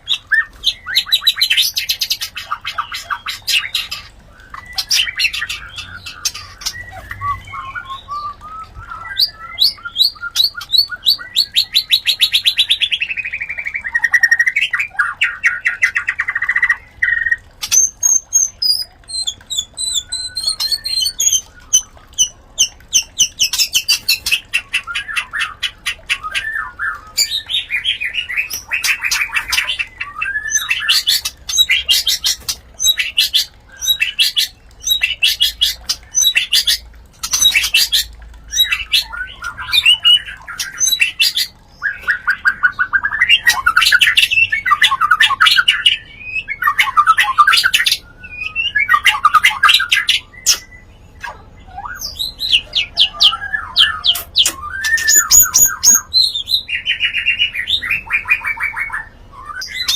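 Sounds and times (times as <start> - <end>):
bird fast trill: 17.1 - 59.9.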